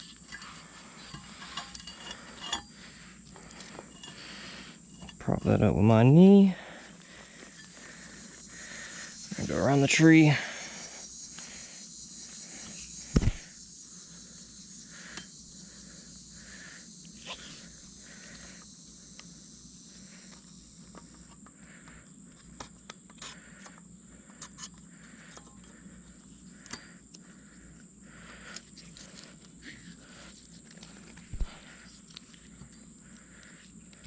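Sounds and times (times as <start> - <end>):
rope and metal hardware clicks: 0.0 - 4.2
insects trilling: 0.0 - 34.0
climbing gear thump: 13.1 - 13.4, 31.3 - 31.6.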